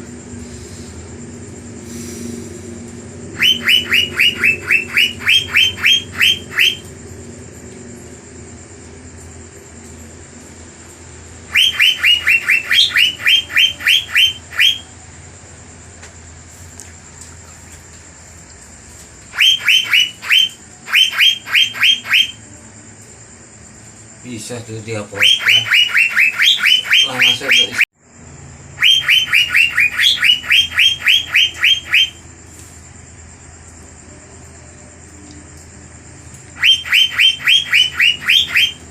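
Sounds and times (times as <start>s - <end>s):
steady low hum: 0.0s - 38.9s
bird calling sharp descending notes: 3.3s - 6.9s, 11.5s - 14.8s, 19.3s - 22.4s, 25.2s - 27.8s, 28.8s - 32.2s, 36.6s - 38.8s.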